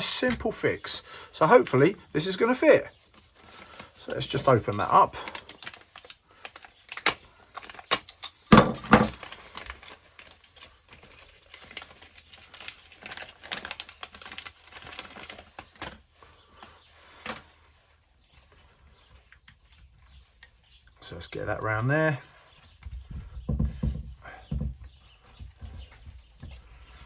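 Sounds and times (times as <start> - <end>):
packet rustling: 1.6 - 21.0.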